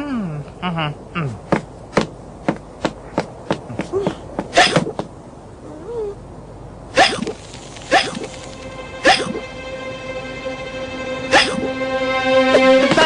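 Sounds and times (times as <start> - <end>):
loud cartoon hiccup: 7.0 - 8.2.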